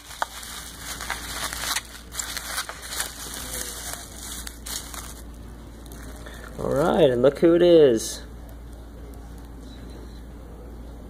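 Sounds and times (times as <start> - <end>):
bubble wrap crinkling and crackling: 0.0 - 6.8.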